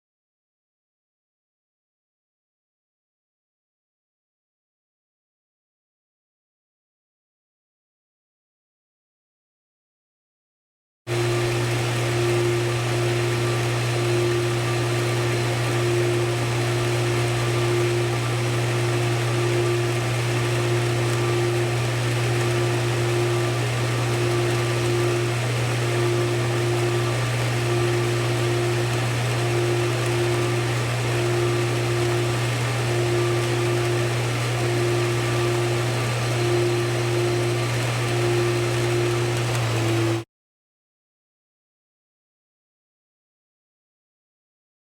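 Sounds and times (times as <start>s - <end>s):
pool pump humming: 11.1s - 40.2s.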